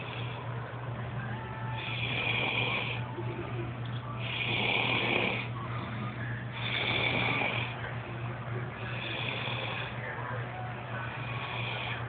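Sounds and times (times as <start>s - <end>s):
woman snoring heavily: 0.0s - 0.4s, 1.8s - 3.1s, 4.2s - 5.6s, 6.6s - 7.8s, 8.9s - 10.0s, 11.2s - 12.0s.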